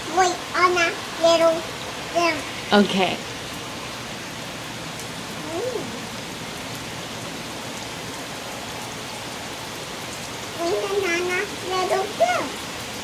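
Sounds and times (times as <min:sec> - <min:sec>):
heavy rain pattering: 0:00.0 - 0:13.0.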